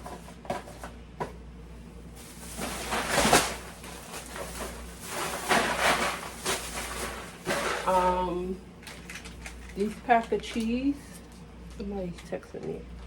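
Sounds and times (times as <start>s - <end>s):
plastic packaging crinkling: 2.1s - 12.3s.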